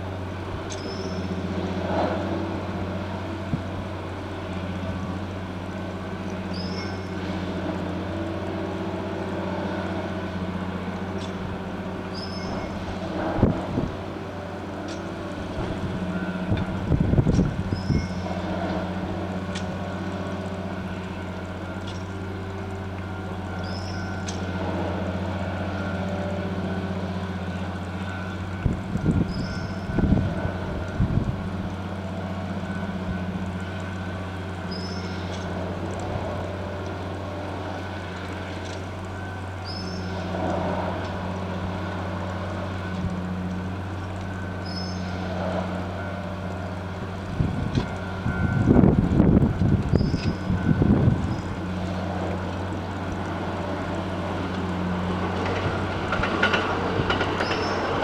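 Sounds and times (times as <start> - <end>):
diesel engine running: 0.0 - 58.0
wind gusts on microphone: 15.4 - 18.2, 47.2 - 51.6.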